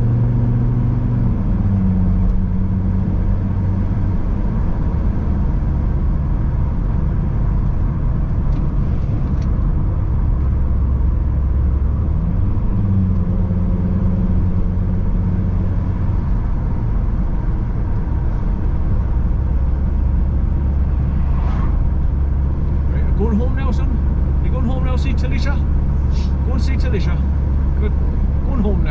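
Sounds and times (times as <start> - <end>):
car engine and tyre rumble: 0.0 - 28.9.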